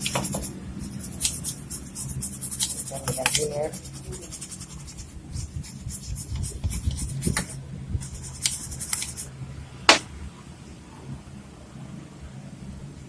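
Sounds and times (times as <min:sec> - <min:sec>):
scratchy scrubbing strokes: 0:00.0 - 0:09.3.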